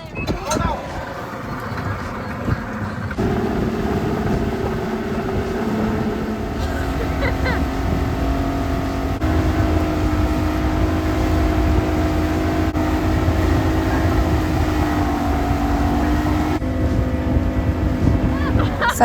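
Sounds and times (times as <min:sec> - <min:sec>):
motorboat engine running: 0:00.0 - 0:19.0
wind and water rumble: 0:00.0 - 0:19.0.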